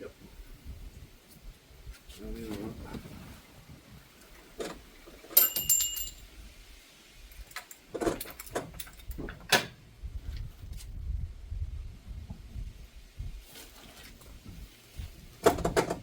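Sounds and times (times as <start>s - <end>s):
metal tools knocking and clicking: 5.4s - 6.2s.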